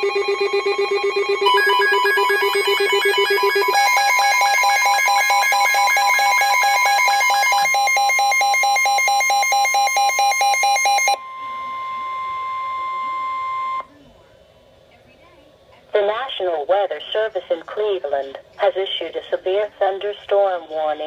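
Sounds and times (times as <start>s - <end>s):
rapid electronic alarm beeping: 0.0s - 13.9s
steady high alert tone: 0.0s - 13.9s.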